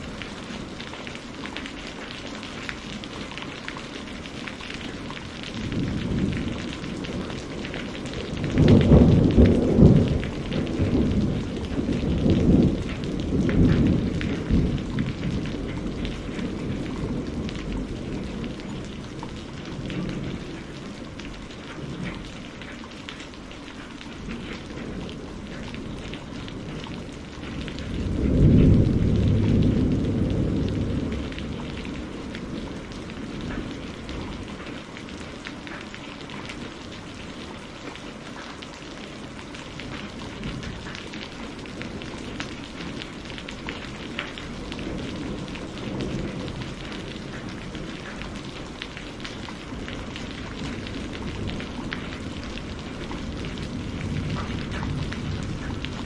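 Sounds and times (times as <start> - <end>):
steady rain: 0.0 - 56.0
thunder rolling: 5.5 - 18.9, 26.6 - 34.6, 49.8 - 56.0.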